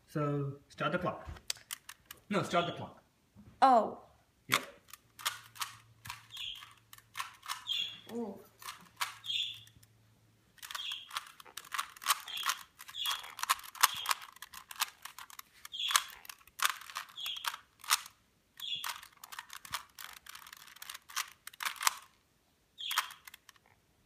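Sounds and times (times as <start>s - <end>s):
plastic puzzle cube clicking: 1.4s - 2.3s, 4.5s - 9.9s, 10.5s - 22.2s, 22.8s - 23.7s.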